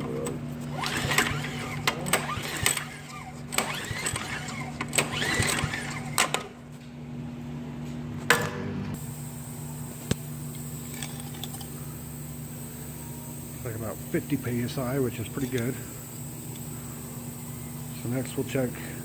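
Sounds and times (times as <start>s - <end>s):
steady low hum: 0.0s - 19.0s
engine cranking without firing: 0.8s - 6.4s.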